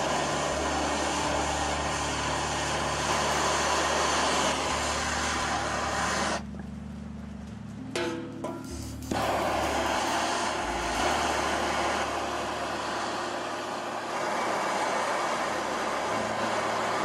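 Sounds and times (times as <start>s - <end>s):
power tool grinding metal: 0.0s - 6.4s
background music: 0.0s - 14.0s.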